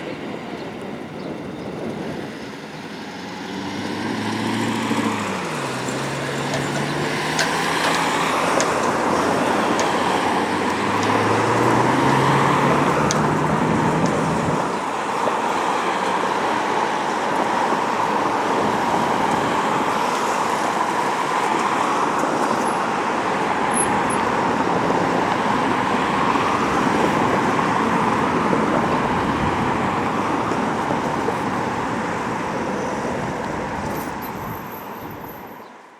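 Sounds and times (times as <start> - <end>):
vehicle passing: 2.9 - 17.1, 17.8 - 35.6.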